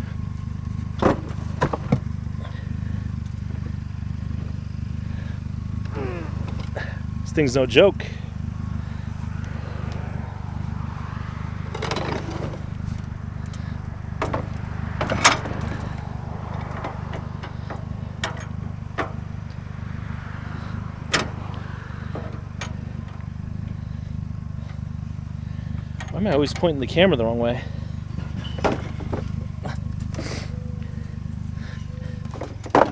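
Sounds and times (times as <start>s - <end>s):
low engine rumble: 0.0s - 32.9s
metal clinks and knocks: 11.7s - 13.6s, 14.2s - 19.2s, 28.2s - 30.0s.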